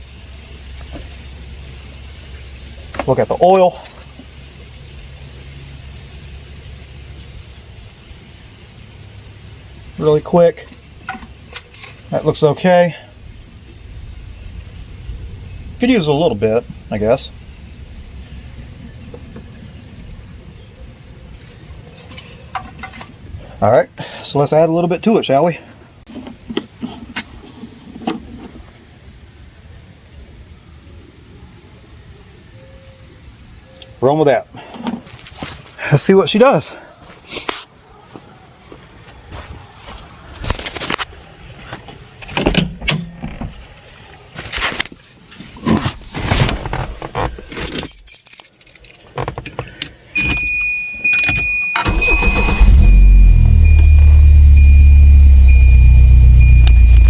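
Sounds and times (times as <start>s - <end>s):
low steady rumble: 0.0s - 21.9s, 51.8s - 57.0s
car engine idling: 13.0s - 20.6s, 51.8s - 57.0s
keys jangling: 47.5s - 49.2s
high-pitched warning tone: 50.2s - 57.0s
starter cranking: 51.8s - 57.0s.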